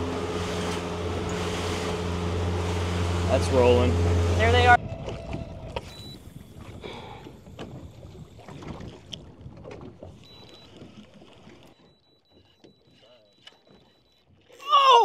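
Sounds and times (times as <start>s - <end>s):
water lapping against boat hull: 0.0s - 15.0s
wind on microphone: 4.6s - 9.8s.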